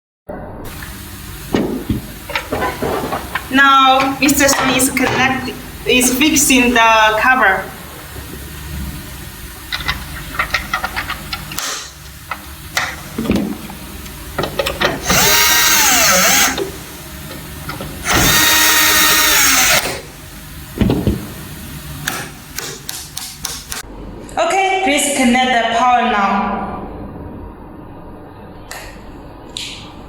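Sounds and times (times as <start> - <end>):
clicks and knocks of handling: 9.7 - 13.8
electric screwdriver motor whine: 15.0 - 16.8, 18.0 - 20.0.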